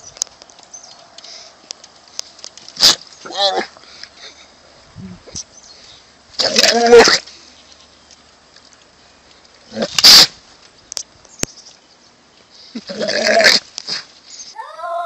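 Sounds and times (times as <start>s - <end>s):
goat screaming: 14.6s - 15.0s.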